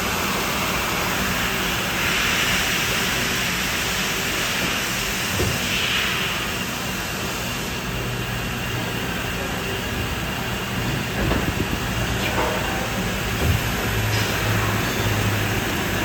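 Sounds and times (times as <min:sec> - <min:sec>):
machine hum with hiss: 0:00.0 - 0:16.0.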